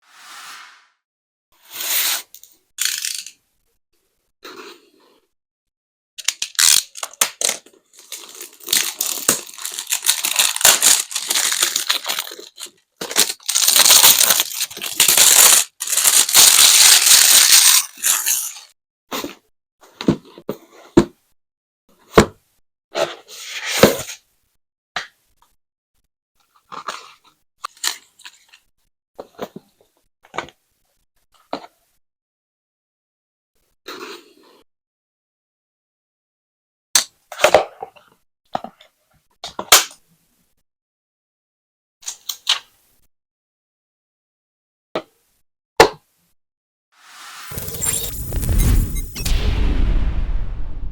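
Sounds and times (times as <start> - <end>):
plastic packaging tearing and crinkling: 6.2 - 18.7.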